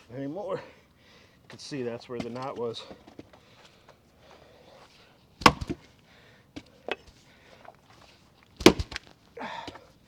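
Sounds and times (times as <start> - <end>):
axe striking wood: 5.4 - 5.9, 8.6 - 9.1.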